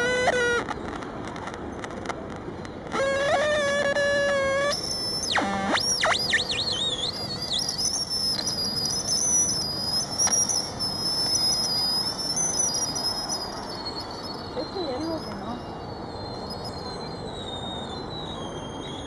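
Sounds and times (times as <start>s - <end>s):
buzzy held tone: 0.0s - 0.8s, 2.9s - 18.0s
wavering high whistle: 0.0s - 0.8s, 2.9s - 19.0s
electronic swooping pitch glides: 2.9s - 8.1s.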